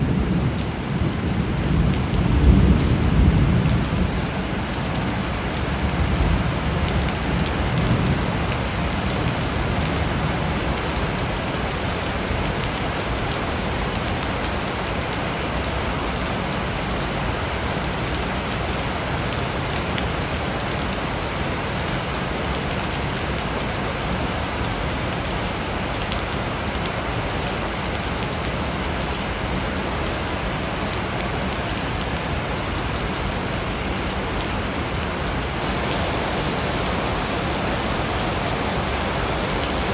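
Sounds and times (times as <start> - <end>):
low rumble of thunder: 0.0 - 10.8
steady rain falling: 0.0 - 39.9.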